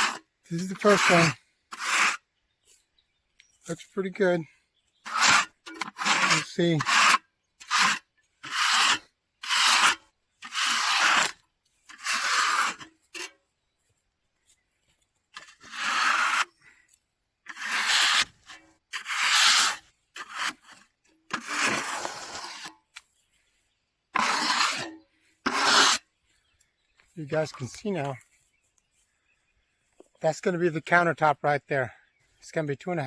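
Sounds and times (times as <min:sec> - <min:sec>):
brush scraping sawdust off wood: 0:00.0 - 0:02.2, 0:05.0 - 0:13.3, 0:15.3 - 0:16.6, 0:17.4 - 0:23.1, 0:24.1 - 0:26.1.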